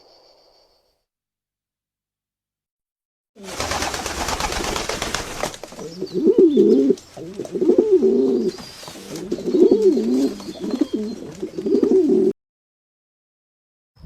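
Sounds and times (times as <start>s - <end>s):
bird warbling calls: 5.8s - 12.3s.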